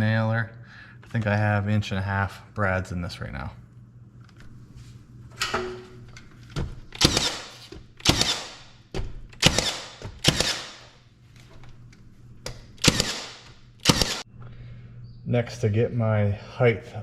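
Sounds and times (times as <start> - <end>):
nail gun firing: 7.0 - 8.8, 9.4 - 11.0, 12.8 - 14.2.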